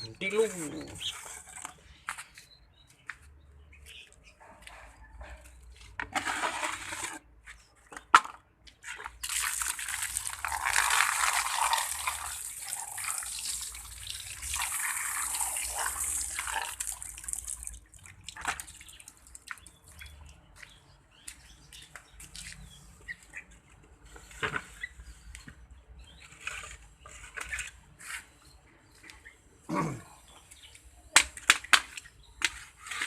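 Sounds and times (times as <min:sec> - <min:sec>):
water running and splashing: 0:09.2 - 0:20.1.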